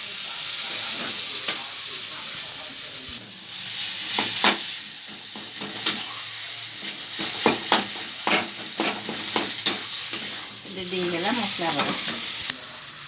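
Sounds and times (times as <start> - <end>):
food sizzling in hot oil: 0.0 - 13.0
spatula scraping a pan: 2.2 - 12.6.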